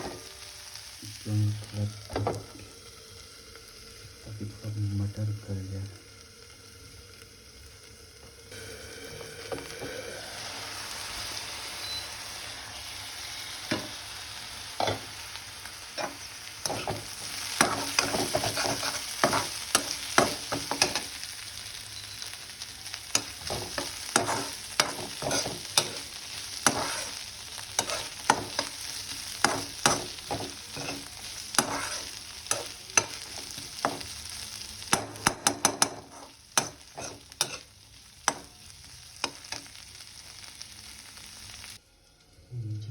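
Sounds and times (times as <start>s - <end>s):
vegetables sizzling in oil: 0.0s - 41.8s
spatula scraping a pan: 15.9s - 21.2s, 23.1s - 34.1s, 34.9s - 37.7s.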